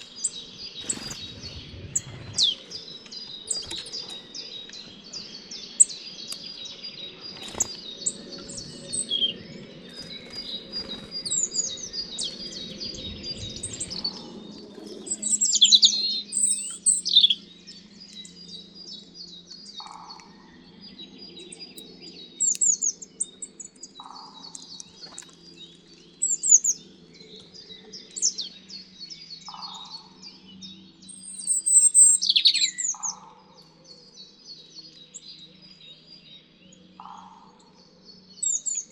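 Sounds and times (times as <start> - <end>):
songbirds chirping: 0.0 - 38.9
bird phrases sweeping down: 0.8 - 3.0.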